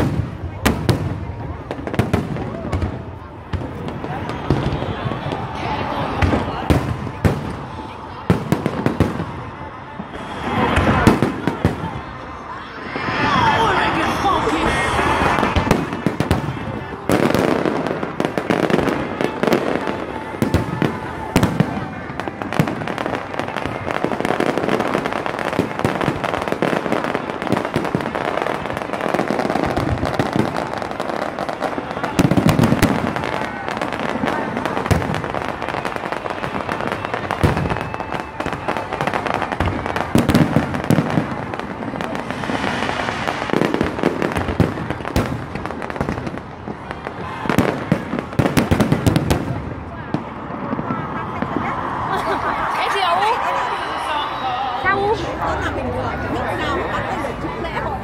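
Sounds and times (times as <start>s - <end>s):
fireworks bangs and crackling: 0.0s - 58.0s.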